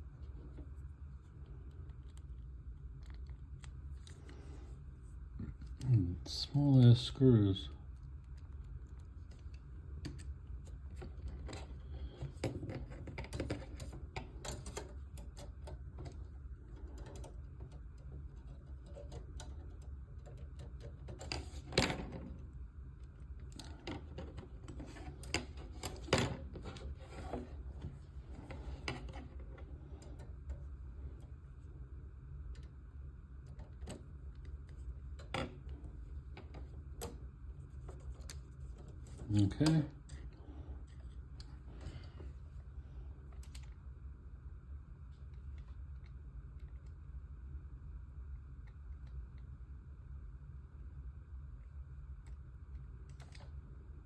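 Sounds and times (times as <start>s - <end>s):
steady low hum: 0.0s - 54.0s
small parts clicking and tapping: 1.4s - 4.5s, 7.8s - 22.4s.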